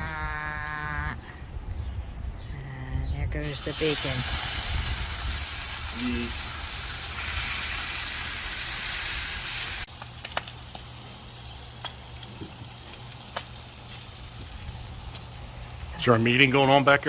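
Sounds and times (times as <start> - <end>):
bacon sizzling on a griddle: 3.4 - 17.0.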